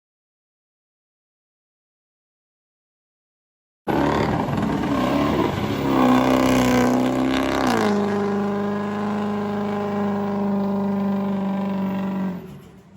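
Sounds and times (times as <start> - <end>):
diesel engine running: 3.9 - 12.9.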